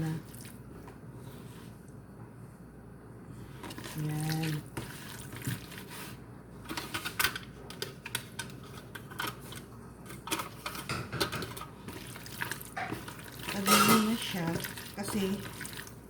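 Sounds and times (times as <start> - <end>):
dishes and utensils clinking: 6.7 - 11.6, 12.7 - 14.4.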